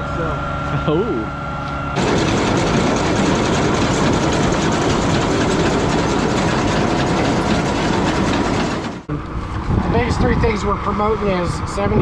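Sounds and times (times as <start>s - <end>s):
farm machinery engine running: 2.0s - 9.1s.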